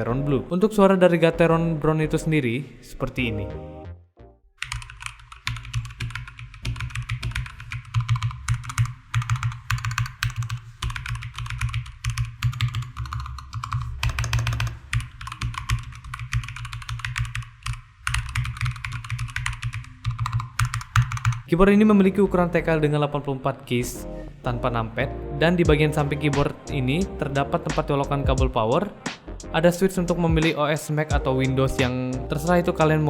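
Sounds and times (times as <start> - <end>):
mechanical keyboard typing: 4.6 - 21.5.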